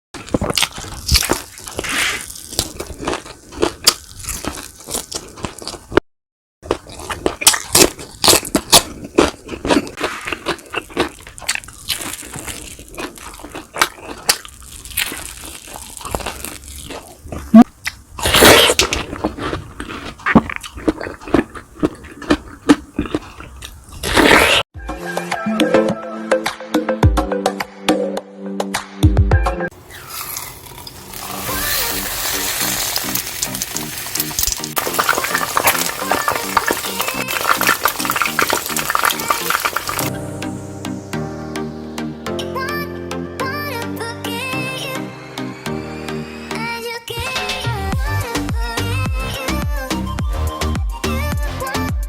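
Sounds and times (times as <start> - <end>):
person crunching and chewing food: 0.2 - 6.0, 6.6 - 24.7, 29.7 - 40.2.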